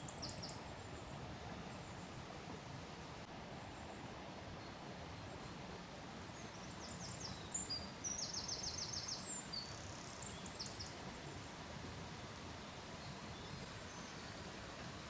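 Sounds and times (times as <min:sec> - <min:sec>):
small songbird singing: 0:00.0 - 0:01.1, 0:06.3 - 0:11.0, 0:13.0 - 0:14.5
outdoor background noise: 0:00.0 - 0:15.0.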